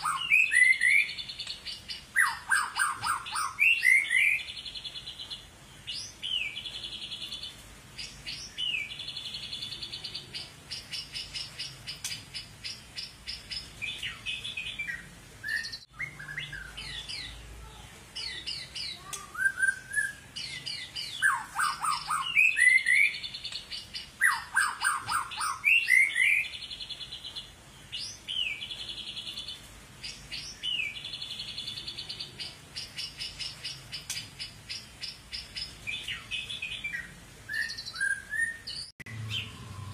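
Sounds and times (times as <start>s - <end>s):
bird whistling downward phrases: 0.0s - 1.2s, 2.2s - 4.5s, 19.3s - 20.2s, 21.2s - 23.2s, 24.2s - 26.5s, 36.9s - 39.9s
bird singing high rapid trills: 0.0s - 17.4s, 18.2s - 39.9s.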